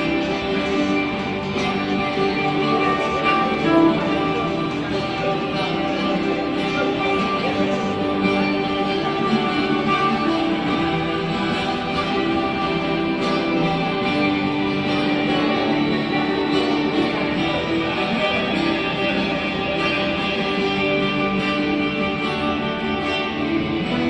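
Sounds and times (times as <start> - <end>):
backing track music: 0.0 - 24.0
ukulele played through amplifier: 0.0 - 24.0.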